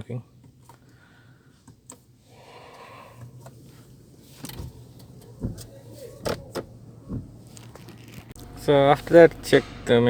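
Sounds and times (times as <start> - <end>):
steady low hum: 1.0 - 10.0
car buttons clicking: 4.3 - 7.8.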